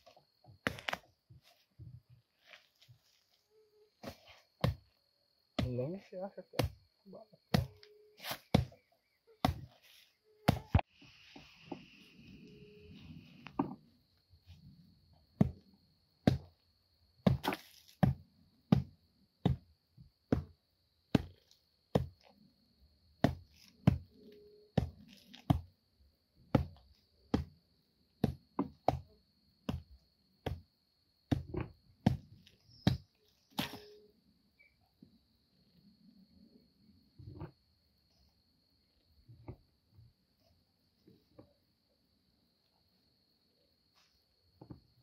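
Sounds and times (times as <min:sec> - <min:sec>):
sharp chopping strikes: 0:07.5 - 0:08.8.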